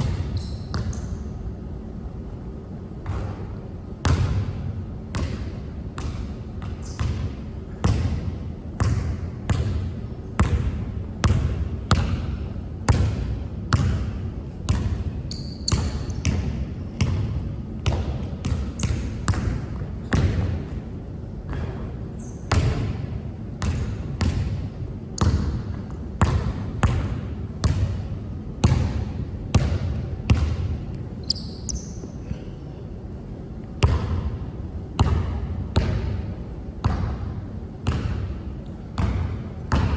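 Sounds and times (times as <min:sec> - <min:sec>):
basketball dribbling on court: 0:00.0 - 0:01.2, 0:04.0 - 0:20.8, 0:21.5 - 0:23.0, 0:23.6 - 0:24.6, 0:25.2 - 0:32.0, 0:33.8 - 0:34.3, 0:35.0 - 0:36.2, 0:36.8 - 0:38.3, 0:38.9 - 0:39.9
shoe squeaks: 0:00.2 - 0:01.3, 0:15.2 - 0:16.2, 0:22.1 - 0:22.5, 0:31.2 - 0:32.3.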